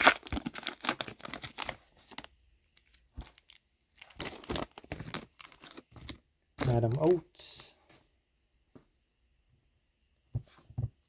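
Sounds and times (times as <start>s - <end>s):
wrapper tearing and crinkling: 0.0s - 6.8s.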